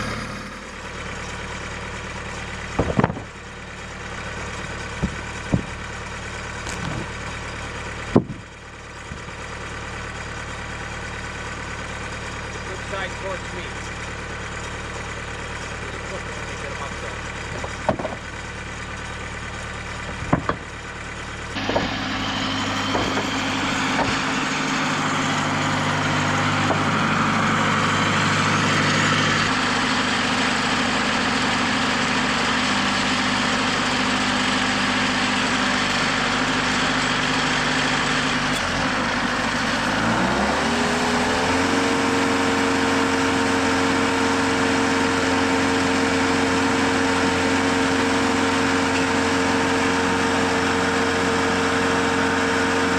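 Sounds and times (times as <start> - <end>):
sawmill engine running: 0.0 - 52.9
sharp knocks: 5.0 - 5.8, 8.1 - 8.4, 17.5 - 18.2, 20.1 - 20.7, 21.6 - 22.1, 22.8 - 24.3.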